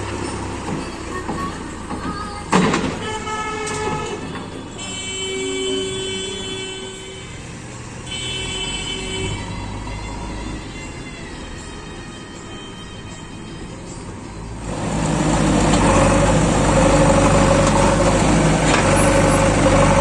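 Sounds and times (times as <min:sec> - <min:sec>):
diesel machinery droning: 0:00.0 - 0:20.0
long horn tones: 0:03.0 - 0:07.4, 0:08.1 - 0:11.0.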